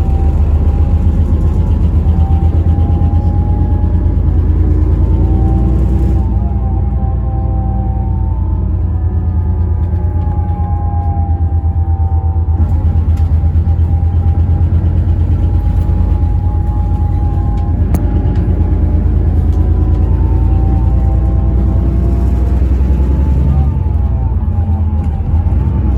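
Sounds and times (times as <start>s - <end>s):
diesel engine rumble: 0.0s - 25.9s.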